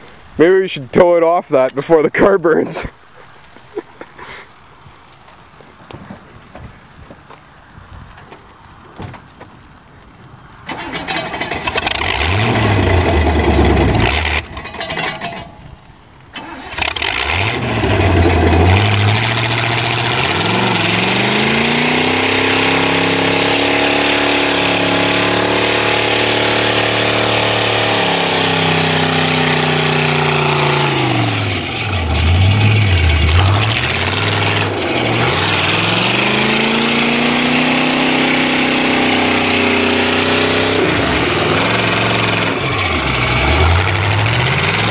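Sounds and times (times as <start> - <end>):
car engine cranking: 10.7 - 15.6, 16.3 - 44.9
car engine revving: 10.8 - 15.2, 16.4 - 44.9.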